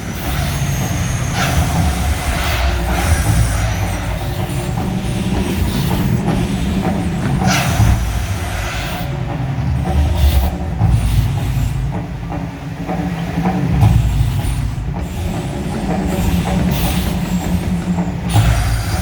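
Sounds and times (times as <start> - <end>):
hissing whooshes: 0.0 - 12.7
deep continuous rumble: 0.0 - 19.0.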